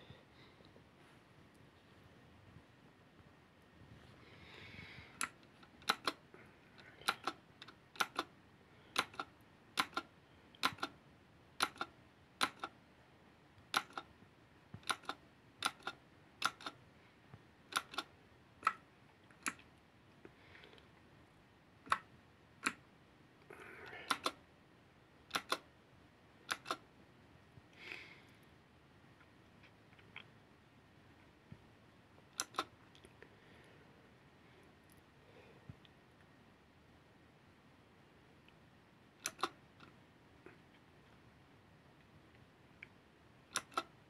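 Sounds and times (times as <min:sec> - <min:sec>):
mechanical keyboard key clicks: 0:05.2 - 0:06.2, 0:07.0 - 0:08.3, 0:09.0 - 0:11.0, 0:11.6 - 0:12.7, 0:13.7 - 0:14.1, 0:14.8 - 0:16.8, 0:17.7 - 0:18.8, 0:24.1 - 0:24.4, 0:25.3 - 0:25.6, 0:26.5 - 0:26.8, 0:39.2 - 0:39.5.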